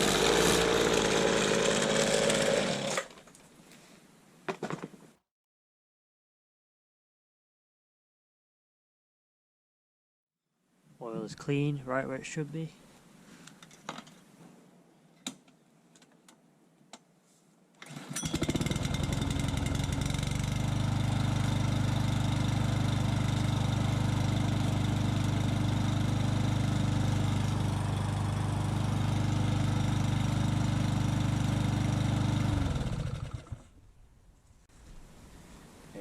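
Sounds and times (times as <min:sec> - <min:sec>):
lawnmower engine starting and running: 0:00.0 - 0:03.3, 0:17.8 - 0:33.8.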